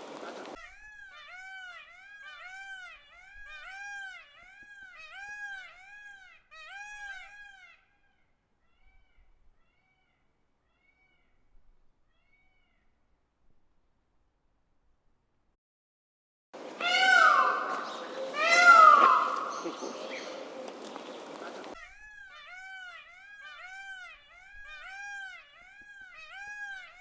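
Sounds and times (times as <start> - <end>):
peafowl calling: 16.6 - 21.8.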